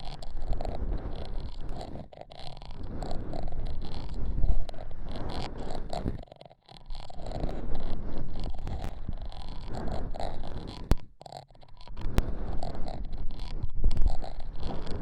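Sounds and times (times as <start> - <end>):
scratching and rubbing: 0.0 - 15.0.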